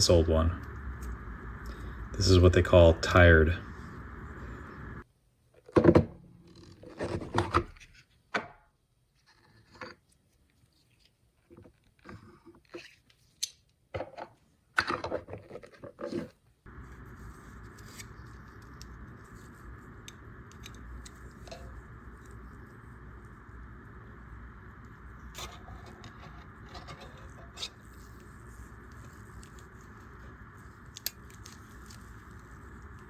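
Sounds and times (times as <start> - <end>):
steady low hum: 0.0 - 5.0, 16.7 - 33.0.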